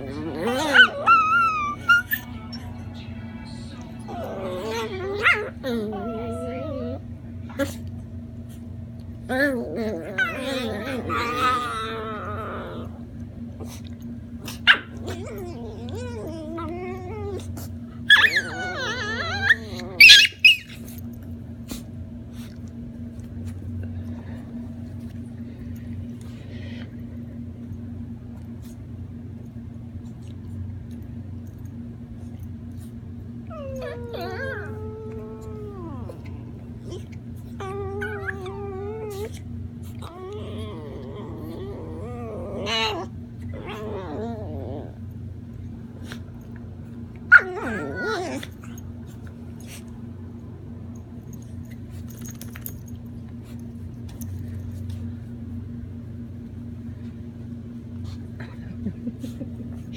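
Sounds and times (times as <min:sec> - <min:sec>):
pet whining vocal call: 0:00.0 - 0:02.8, 0:03.6 - 0:07.8, 0:09.2 - 0:21.0, 0:33.4 - 0:45.1, 0:47.2 - 0:49.9
steady low hum: 0:00.0 - 0:59.9
pet animal wavering call: 0:00.4 - 0:02.6.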